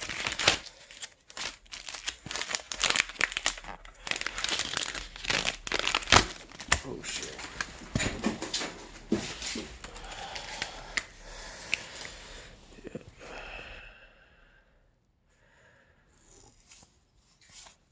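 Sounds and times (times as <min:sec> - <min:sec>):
plastic wrapping crinkling: 0:00.0 - 0:12.6.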